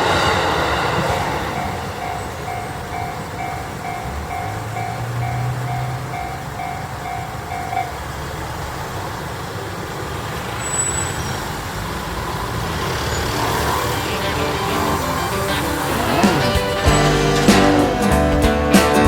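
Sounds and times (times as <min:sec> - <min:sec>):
level crossing warning bell: 0:00.0 - 0:09.8
road traffic: 0:00.0 - 0:19.0
music: 0:14.1 - 0:19.0.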